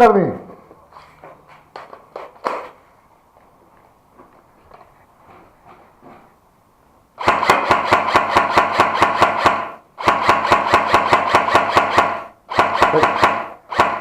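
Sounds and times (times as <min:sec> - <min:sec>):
airsoft gun firing full auto: 0:07.2 - 0:14.0.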